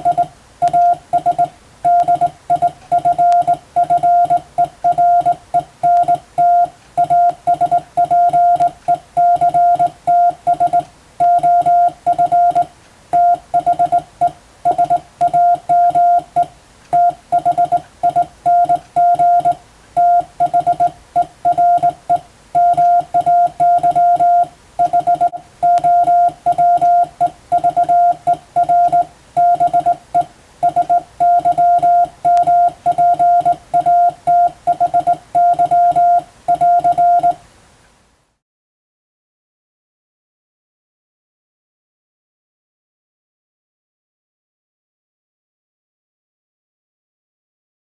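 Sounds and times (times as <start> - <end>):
morse code beeps: 0.0 - 37.4.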